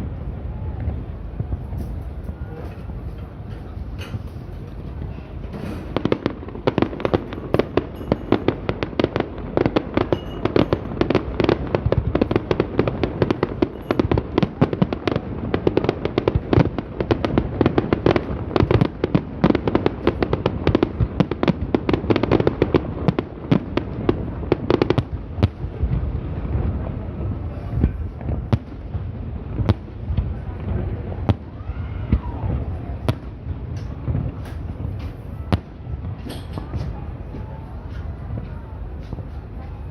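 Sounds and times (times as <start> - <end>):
fireworks cracking and banging: 0.0 - 39.9.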